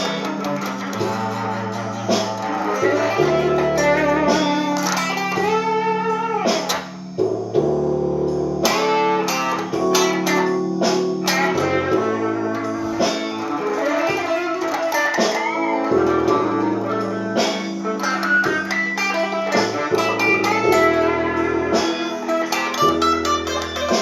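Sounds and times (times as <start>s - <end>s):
sustained low bass notes: 0.0s - 14.6s
blues guitar lead lines: 0.0s - 24.0s.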